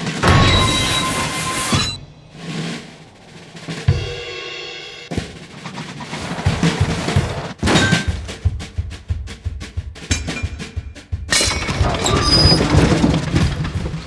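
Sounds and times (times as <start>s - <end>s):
drum and snare hits: 0.0s - 11.8s.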